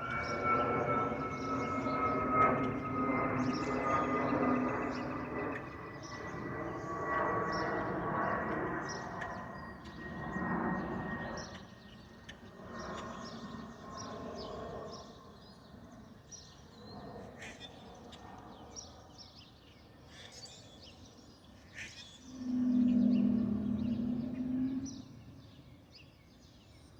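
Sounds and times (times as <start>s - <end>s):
jet engines whining: 0.0s - 15.4s
birds chirping: 0.1s - 26.4s.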